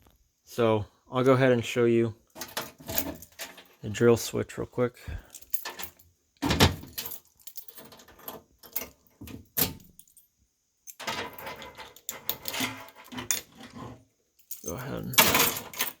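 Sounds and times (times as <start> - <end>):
keys jangling and clicking: 2.4 - 3.8, 5.3 - 10.3, 10.9 - 13.6, 14.4 - 16.0.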